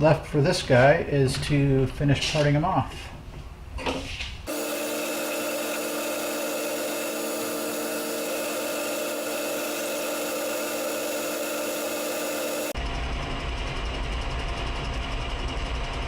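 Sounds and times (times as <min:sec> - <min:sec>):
metal lathe humming: 0:04.5 - 0:12.8
parting tool cutting metal: 0:04.5 - 0:12.8.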